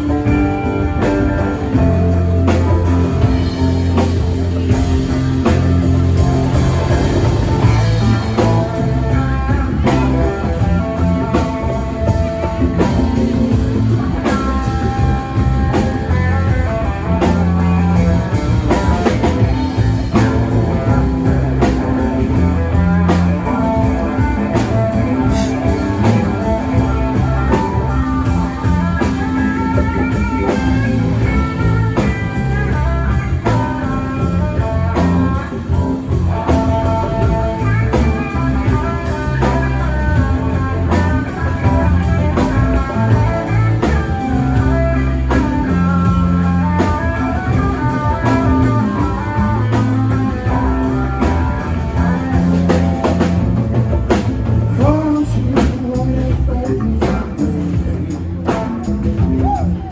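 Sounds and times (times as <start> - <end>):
bass guitar: 0.0 - 59.9
drum kit: 0.0 - 59.9
electric guitar melodic lines: 0.0 - 59.9.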